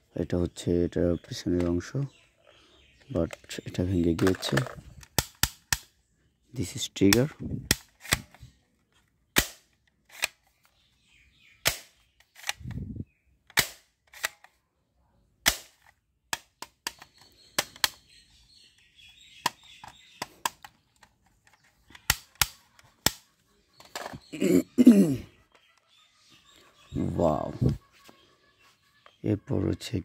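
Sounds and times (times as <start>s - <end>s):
toy gun trigger clicks: 19.4s - 23.3s.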